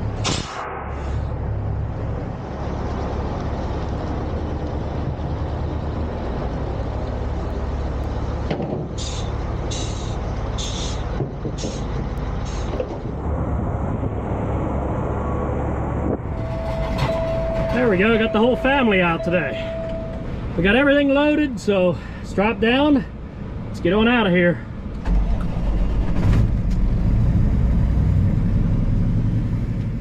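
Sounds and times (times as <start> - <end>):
diesel truck engine idling: 2.4 - 13.2, 16.3 - 26.2
short air hisses: 9.0 - 12.8.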